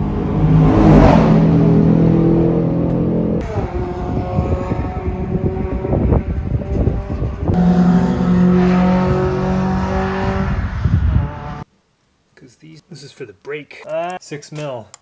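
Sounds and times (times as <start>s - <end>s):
engine running at varying speed: 0.0s - 11.6s.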